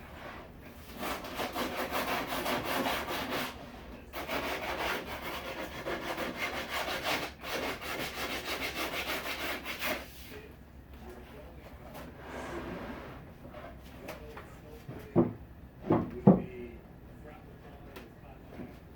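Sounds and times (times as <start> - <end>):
hand tool rasping wood: 1.0 - 3.6, 4.2 - 10.1.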